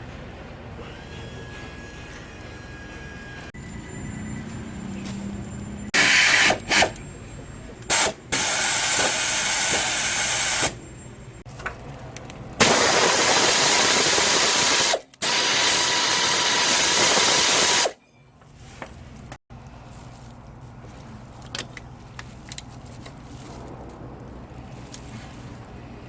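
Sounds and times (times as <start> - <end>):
power tool running in bursts: 6.0 - 7.0, 7.9 - 10.8, 12.6 - 18.0.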